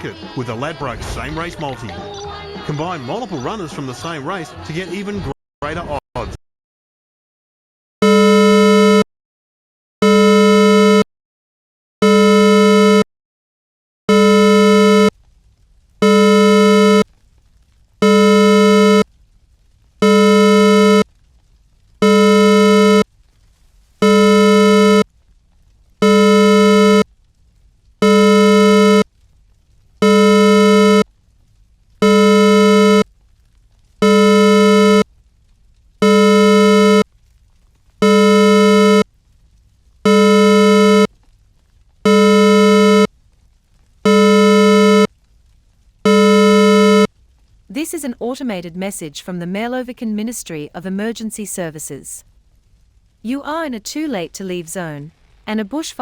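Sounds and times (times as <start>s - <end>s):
buzzy two-tone alarm beeps: 46.1s - 47.1s.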